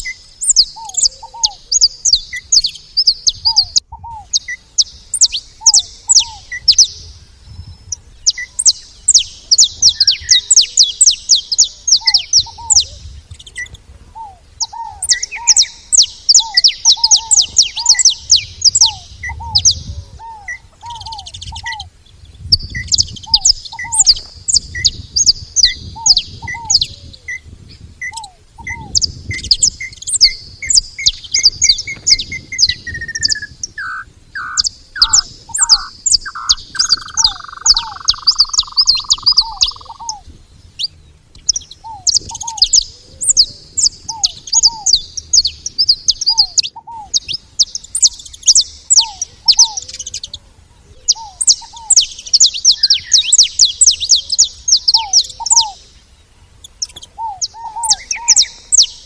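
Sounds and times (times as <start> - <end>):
bird lower repeated call: 0.0 - 7.2, 7.9 - 22.0, 22.6 - 56.1, 56.8 - 59.0
finches chirping: 0.0 - 50.4, 51.0 - 59.0.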